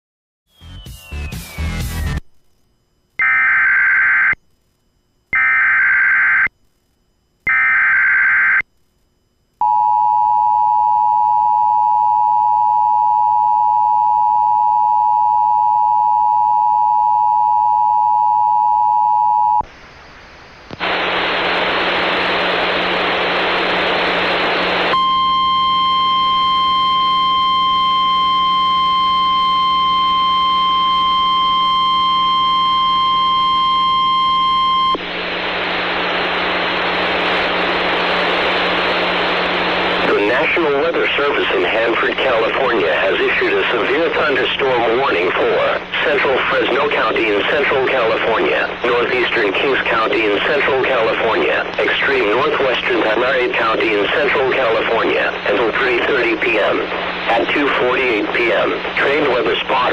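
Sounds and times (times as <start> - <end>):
radio static: 19.5 - 59.9
data tone bursts: 24.9 - 35.0.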